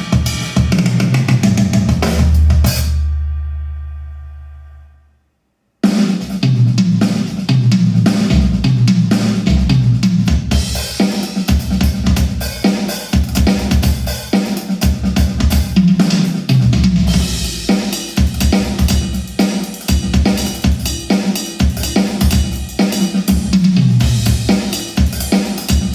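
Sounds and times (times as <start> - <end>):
music with drum kit: 0.0 - 3.7, 5.8 - 25.9
heavy bass line: 0.0 - 5.0, 16.6 - 19.4, 23.4 - 25.0.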